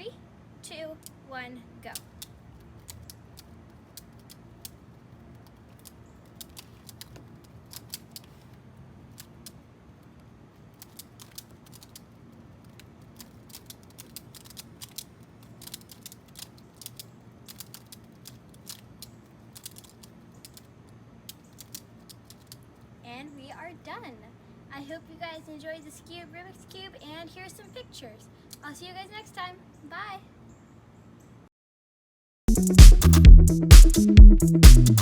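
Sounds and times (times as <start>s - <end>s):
puzzle pieces clicking: 10.7s - 20.7s.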